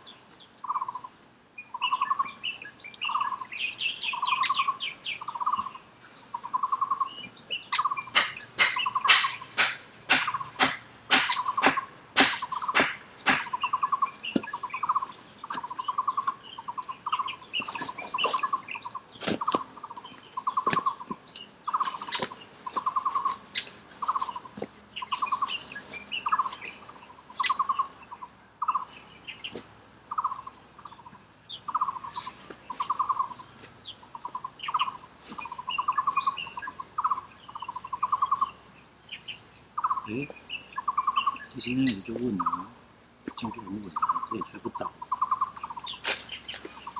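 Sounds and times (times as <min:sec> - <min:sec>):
animal calling in pulsed trills: 0:00.6 - 0:28.9, 0:30.1 - 0:31.1, 0:31.7 - 0:38.6, 0:39.8 - 0:40.2, 0:40.8 - 0:42.8, 0:43.4 - 0:46.0.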